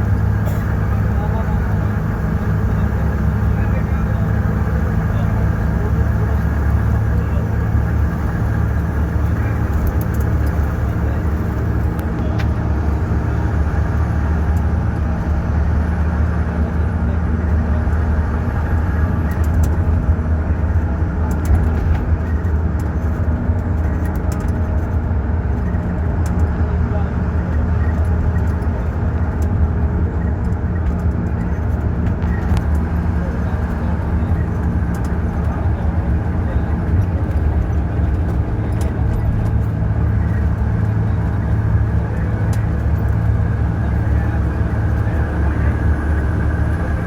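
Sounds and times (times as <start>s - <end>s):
bus diesel engine running: 0.0s - 47.0s.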